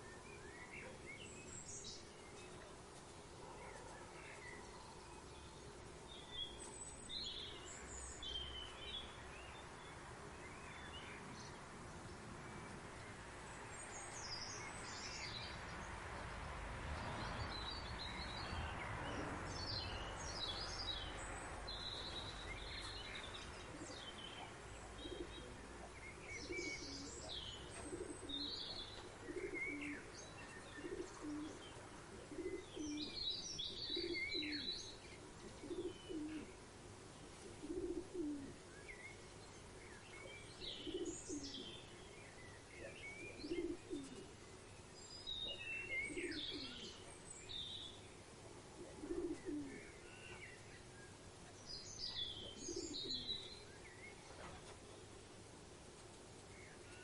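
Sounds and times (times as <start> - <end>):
small birds chirping and trilling: 0.0 - 57.0
soft rush of noise: 0.0 - 57.0.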